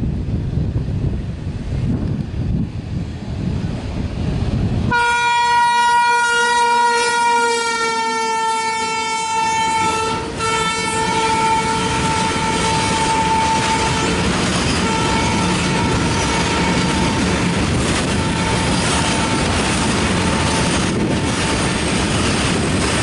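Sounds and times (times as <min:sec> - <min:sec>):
rumble of train passing: 0:00.0 - 0:23.0
locomotive horn blowing: 0:04.9 - 0:20.8.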